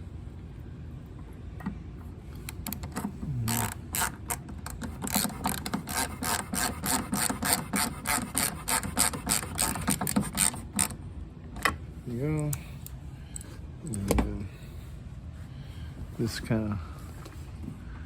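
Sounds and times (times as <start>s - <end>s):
hand ratchet clicking: 2.7s - 10.9s.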